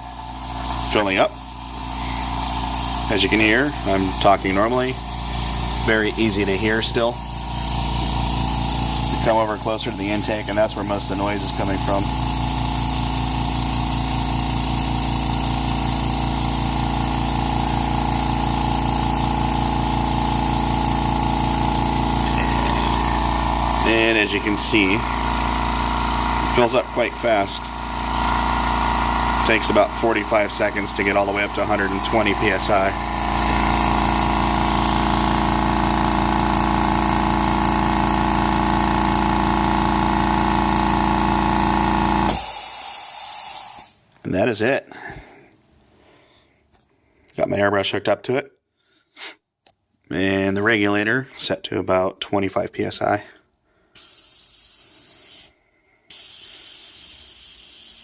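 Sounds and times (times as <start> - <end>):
air compressor running: 0.0 - 44.1, 53.7 - 58.0
short hiss of air: 42.3 - 44.0, 53.9 - 58.0.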